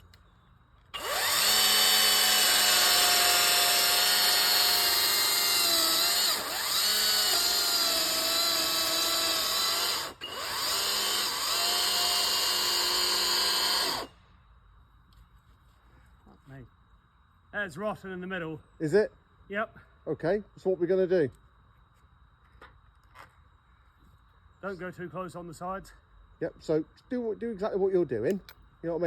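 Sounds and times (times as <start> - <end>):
electric chainsaw cutting wood: 1.0 - 14.2.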